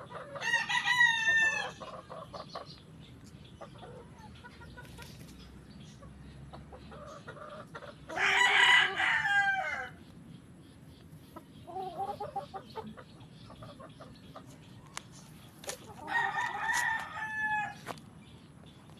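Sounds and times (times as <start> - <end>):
roosters crowing: 0.0 - 2.6, 6.8 - 10.1, 15.6 - 18.0.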